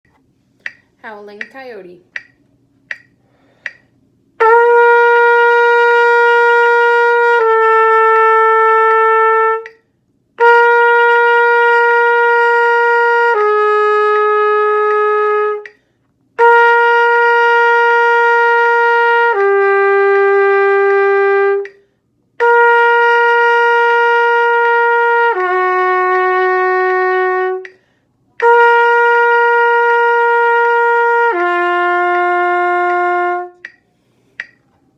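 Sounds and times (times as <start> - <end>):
breaths: 3.2 - 4.0, 15.7 - 16.2, 21.8 - 22.1, 27.7 - 28.3, 33.8 - 34.6
trumpet playing long tones: 4.4 - 9.8, 10.4 - 15.8, 16.4 - 21.8, 22.4 - 27.8, 28.4 - 33.7.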